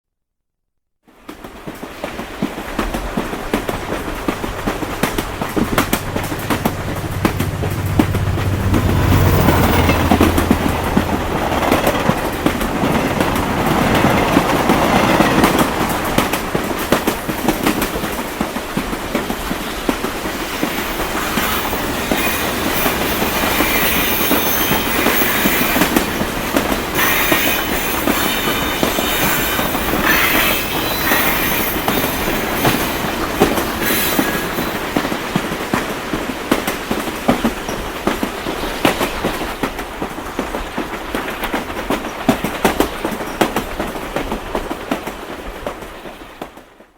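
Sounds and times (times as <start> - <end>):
train cars clattering over track: 1.3 - 46.7
low drone: 3.8 - 16.5
high wheel squeals: 4.4 - 16.3, 20.3 - 35.3.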